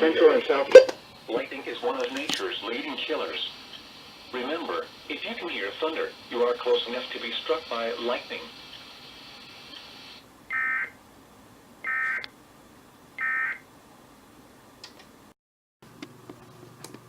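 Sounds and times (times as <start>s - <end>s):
radio data tone bursts: 2.7s - 11.0s.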